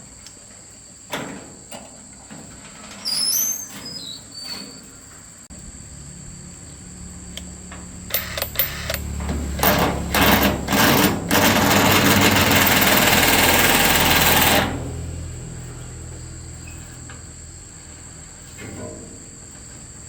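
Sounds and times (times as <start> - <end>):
harsh hissing mechanical noise: 4.6 - 18.6
machine humming: 5.6 - 15.4.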